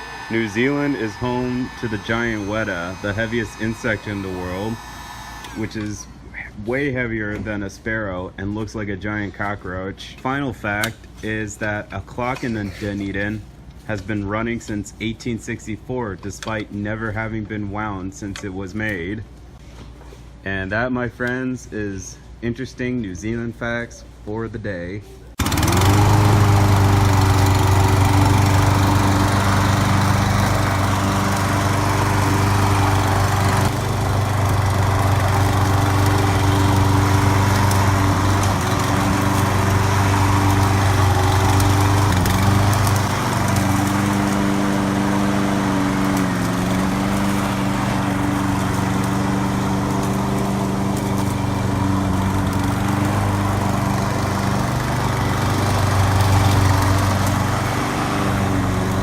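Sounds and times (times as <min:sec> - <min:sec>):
mower engine running steadily: 0:00.0 - 0:06.1, 0:25.4 - 0:59.0.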